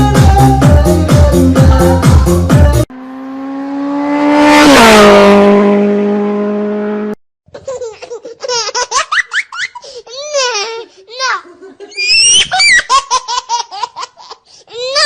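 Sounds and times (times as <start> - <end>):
vehicle engine passing by: 2.9 - 7.2
young child laughing: 7.5 - 15.0.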